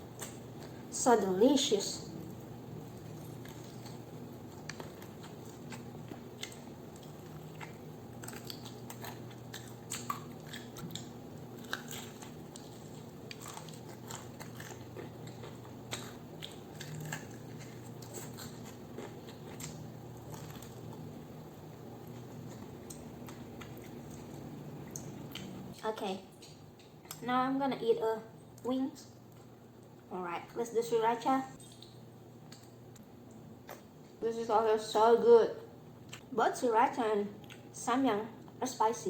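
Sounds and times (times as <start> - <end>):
faint low hum: 0.0 - 39.0
crunchy chewing: 2.2 - 25.8.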